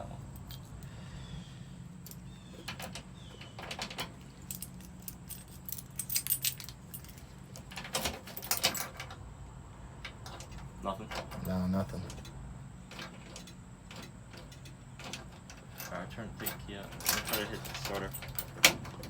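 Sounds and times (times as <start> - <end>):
keys jangling: 0.3 - 0.9, 2.0 - 3.0, 3.7 - 9.2, 10.2 - 12.3, 12.9 - 19.0.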